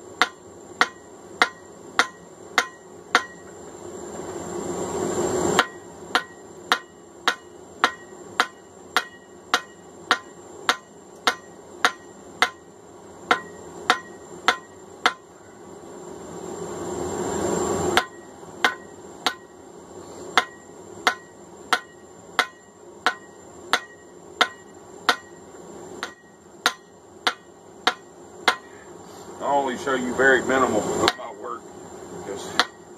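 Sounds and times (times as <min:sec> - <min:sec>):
hammer striking hot steel on anvil: 0:00.2 - 0:03.6, 0:05.5 - 0:12.7, 0:13.3 - 0:15.3, 0:17.9 - 0:19.6, 0:20.3 - 0:28.8, 0:31.0 - 0:31.4, 0:32.4 - 0:32.9.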